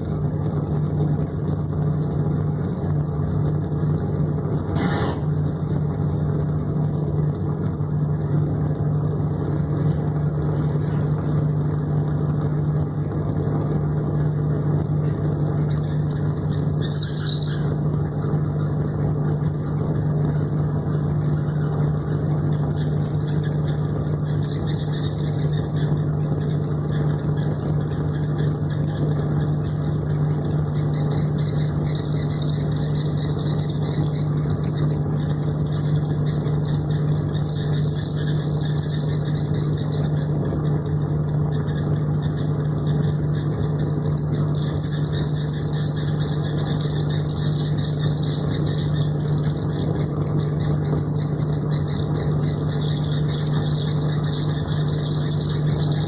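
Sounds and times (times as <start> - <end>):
motor humming: 13.2 - 56.0.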